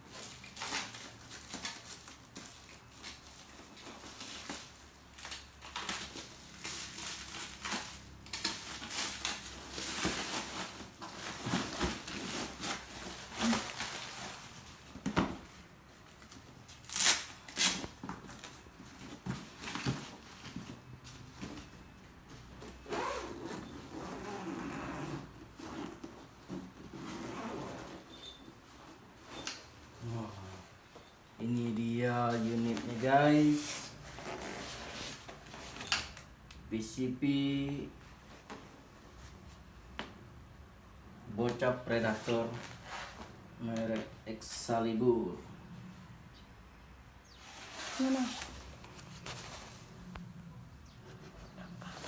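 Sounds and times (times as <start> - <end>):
packaging rustling and scraping: 0.1 - 31.1, 32.0 - 36.2, 47.3 - 52.0.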